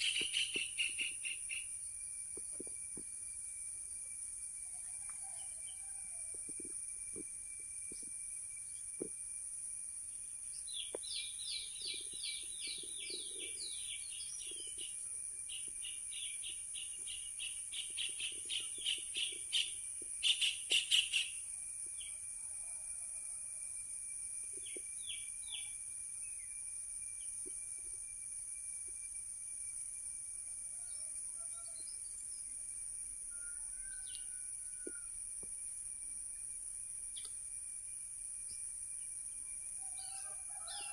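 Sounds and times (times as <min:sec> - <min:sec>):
bird chirping: 0:00.0 - 0:01.7, 0:10.6 - 0:21.4.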